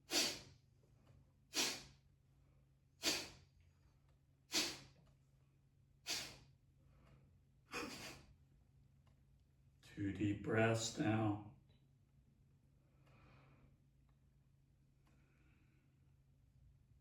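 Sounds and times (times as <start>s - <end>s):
sharp exhales through the nose: 0.1s - 0.6s, 1.5s - 2.0s, 3.0s - 3.4s, 4.5s - 5.0s, 6.0s - 6.5s.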